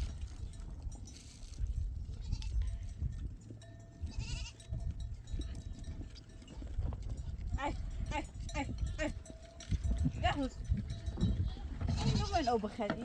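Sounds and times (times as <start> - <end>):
livestock bleating: 2.2 - 2.7, 4.1 - 4.6, 11.8 - 12.8.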